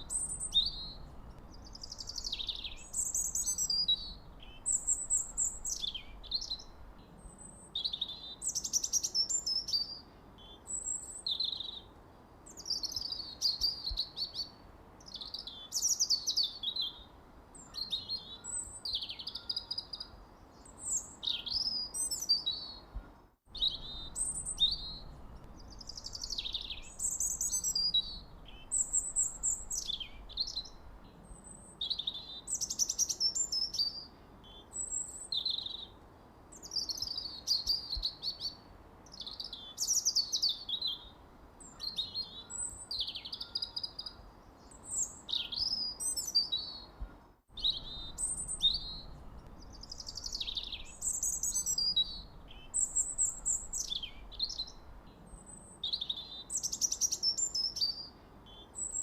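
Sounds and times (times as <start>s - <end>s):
songbirds chirping and singing: 0.0s - 11.9s, 12.5s - 36.0s, 47.6s - 59.0s.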